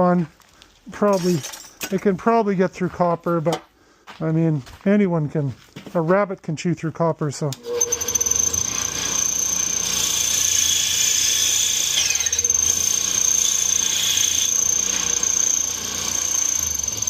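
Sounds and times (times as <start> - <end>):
short falling squeal: 7.6 - 12.5
bandsaw cutting metal pipe: 7.6 - 17.0.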